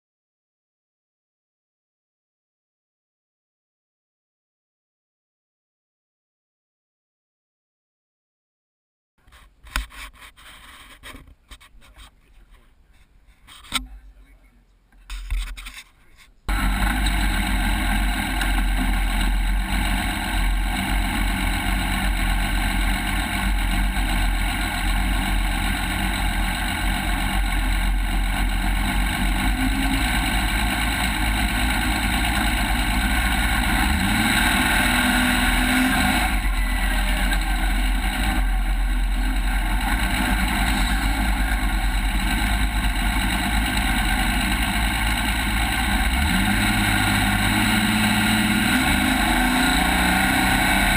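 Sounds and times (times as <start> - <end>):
race vehicle engine running: 16.5 - 50.9.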